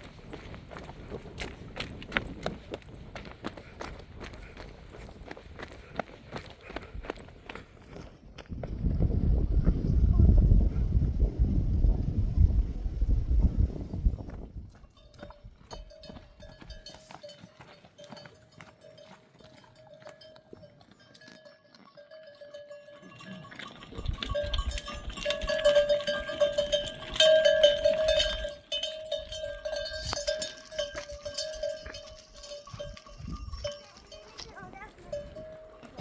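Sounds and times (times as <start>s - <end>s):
hooves clicking: 0.0s - 8.8s, 14.2s - 36.0s
sheep bells clanking: 14.7s - 36.0s.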